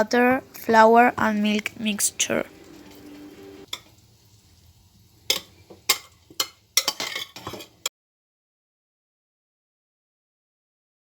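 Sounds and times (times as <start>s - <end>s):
utensil clinking against pot: 5.3s - 7.8s.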